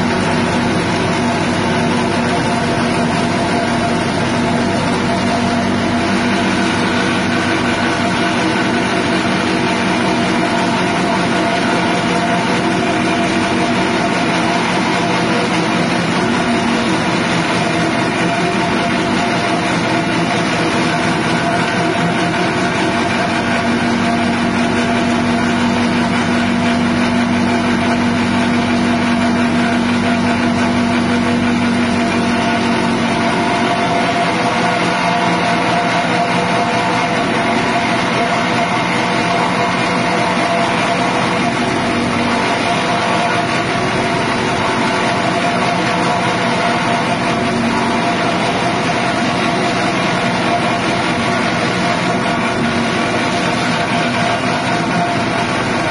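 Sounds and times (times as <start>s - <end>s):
small petrol engine running: 0.0s - 55.9s.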